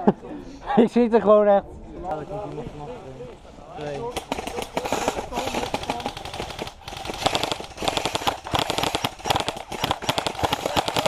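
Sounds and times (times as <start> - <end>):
airsoft rifles firing bursts: 4.1 - 11.0.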